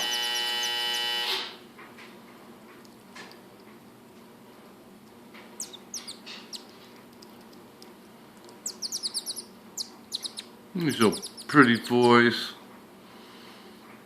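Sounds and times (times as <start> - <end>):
marmoset chirping: 5.6 - 6.8, 8.6 - 12.2.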